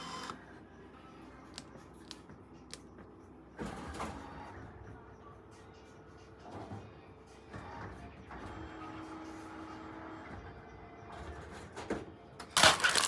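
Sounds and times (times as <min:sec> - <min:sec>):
vending machine humming: 0:00.0 - 0:02.8, 0:12.6 - 0:13.0
vending machine item clattering down: 0:12.6 - 0:13.0.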